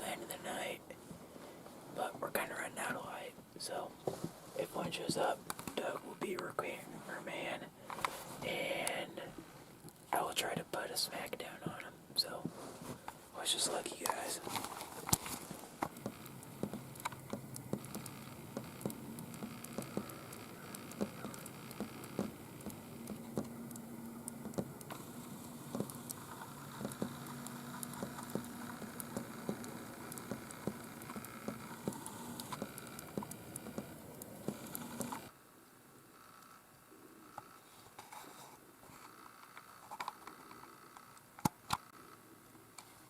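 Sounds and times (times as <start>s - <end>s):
faint hiss: 0.0s - 39.1s
snow ticking on a blind: 12.5s - 35.3s
low hum: 13.1s - 35.3s.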